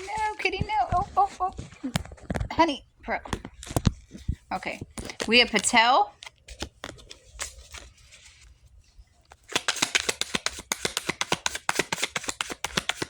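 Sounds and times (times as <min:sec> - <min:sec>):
cards being shuffled: 0:03.2 - 0:08.6, 0:09.2 - 0:13.0.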